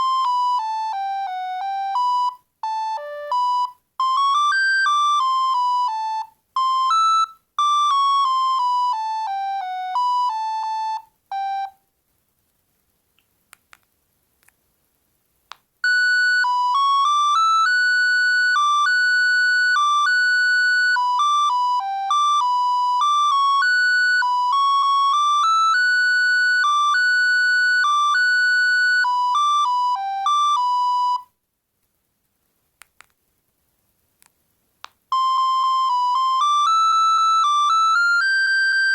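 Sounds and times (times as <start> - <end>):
mobile phone ringtone: 0.0 - 11.8, 15.8 - 31.3, 35.1 - 38.9.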